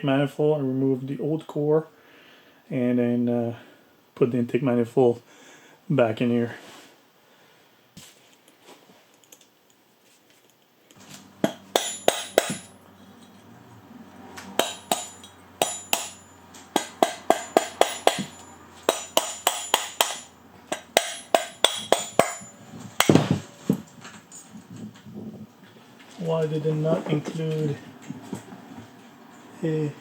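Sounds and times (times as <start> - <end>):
hand tools clicking on metal: 10.6 - 13.6, 14.3 - 23.2
loud knock: 21.0 - 23.8.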